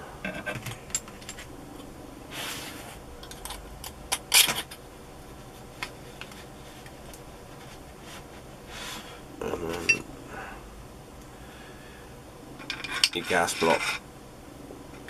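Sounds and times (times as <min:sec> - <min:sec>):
sliding rustle of parts: 0:12.6 - 0:14.0.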